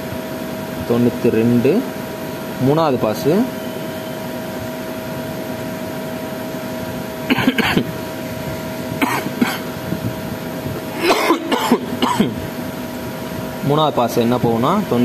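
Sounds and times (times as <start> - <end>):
room hum: 0.0 - 15.0
man clearing his throat: 7.3 - 8.0, 9.0 - 9.7, 11.0 - 12.4.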